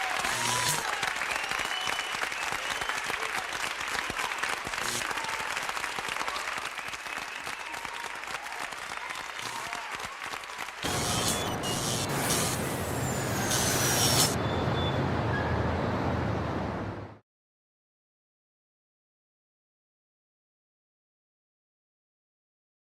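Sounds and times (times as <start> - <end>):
crowd applauding: 0.0 - 11.6.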